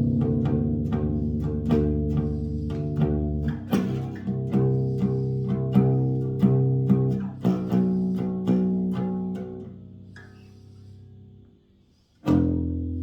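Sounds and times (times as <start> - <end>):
bass guitar plucked notes: 0.0 - 9.7.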